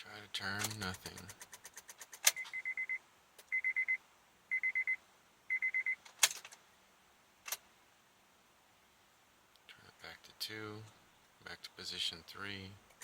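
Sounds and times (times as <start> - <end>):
dashboard warning chime beeping: 2.3 - 6.0.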